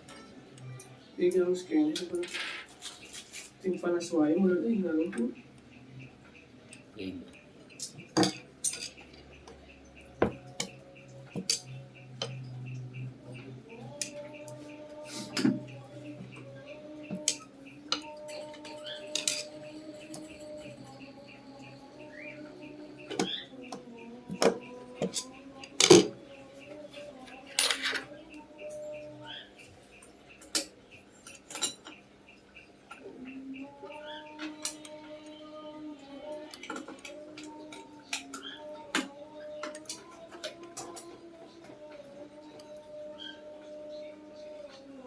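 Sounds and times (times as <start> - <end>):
metal tools clinking: 7.8 - 9.0.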